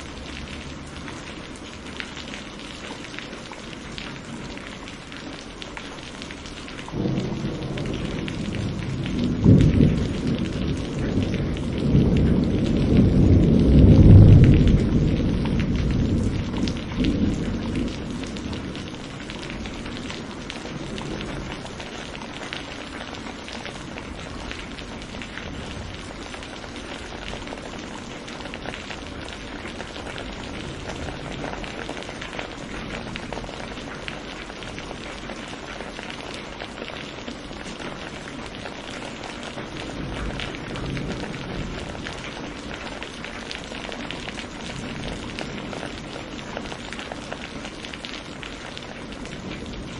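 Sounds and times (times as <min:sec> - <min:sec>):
steady rain with patter of drops: 0:00.0 - 0:49.9
thunder rolling: 0:06.9 - 0:23.2, 0:39.7 - 0:43.0.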